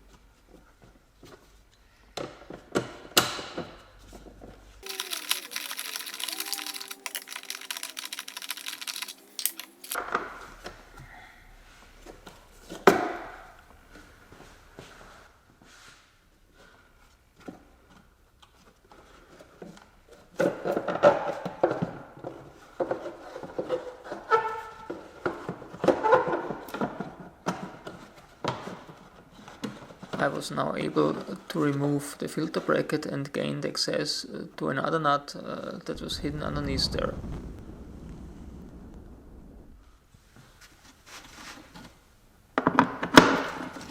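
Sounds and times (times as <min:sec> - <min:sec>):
hand tools clicking and scraping: 0:04.8 - 0:10.0.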